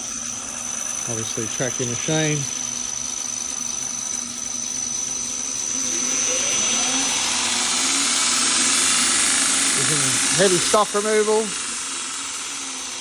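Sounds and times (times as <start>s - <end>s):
belt grinder whirring: 0.0s - 13.0s
thin high whine: 0.0s - 13.0s.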